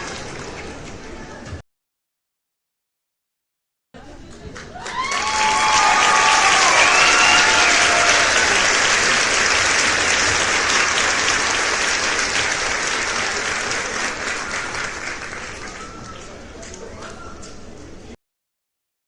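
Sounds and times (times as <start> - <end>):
people clapping: 0.0 - 1.0, 4.2 - 17.2
crowd cheering: 4.6 - 16.4
whooping shouts: 4.8 - 8.8.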